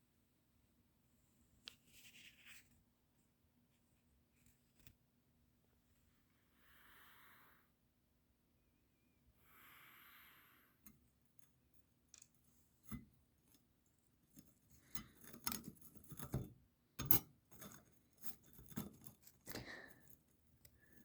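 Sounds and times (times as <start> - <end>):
steel parts clicking and knocking: 14.3 - 19.9.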